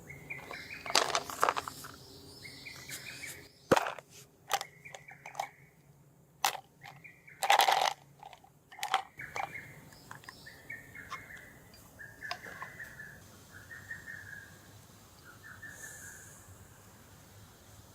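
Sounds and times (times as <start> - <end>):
bird chirps: 0.0 - 3.7, 4.6 - 5.8, 6.8 - 7.5, 9.0 - 16.4.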